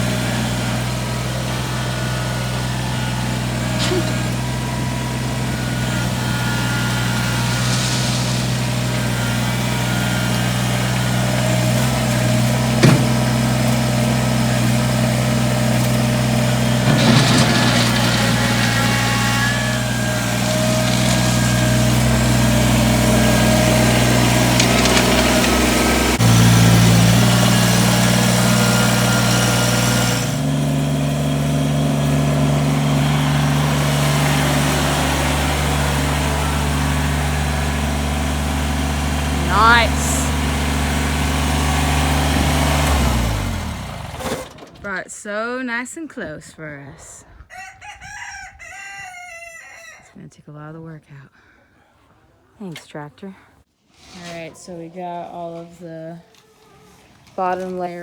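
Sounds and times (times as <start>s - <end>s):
tractor engine running: 0.0s - 45.2s.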